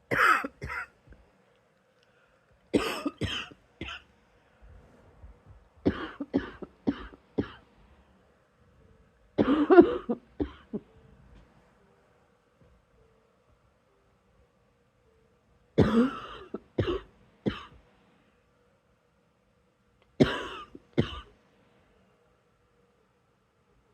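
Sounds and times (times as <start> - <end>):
person coughing: 0.1 - 1.0, 2.8 - 4.0, 5.9 - 7.6, 9.4 - 10.8, 15.8 - 17.8, 20.2 - 21.3.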